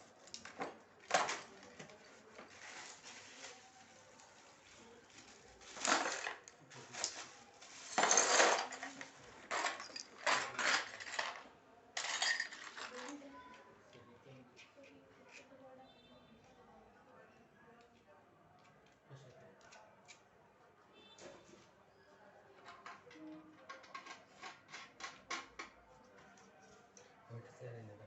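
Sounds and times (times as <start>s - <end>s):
metal pieces clinking: 7.8s - 11.4s, 12.0s - 13.1s.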